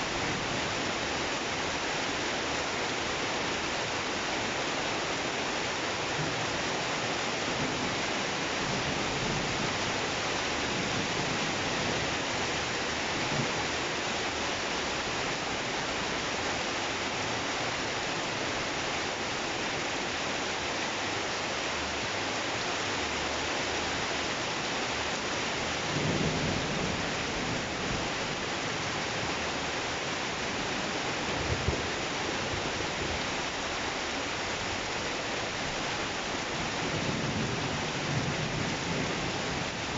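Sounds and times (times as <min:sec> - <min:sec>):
steady rain falling: 0:00.0 - 0:39.9
low rumble of thunder: 0:07.6 - 0:13.8, 0:25.7 - 0:29.4, 0:36.2 - 0:39.9.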